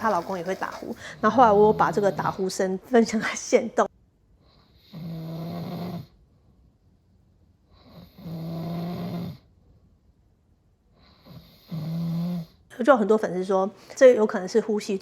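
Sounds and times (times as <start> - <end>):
man snoring loudly: 0.0 - 2.4, 4.9 - 6.1, 8.1 - 9.4.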